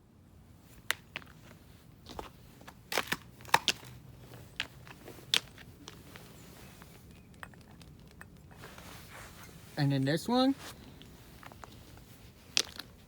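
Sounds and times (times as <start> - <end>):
sharp clicks and crunches: 2.1 - 4.0.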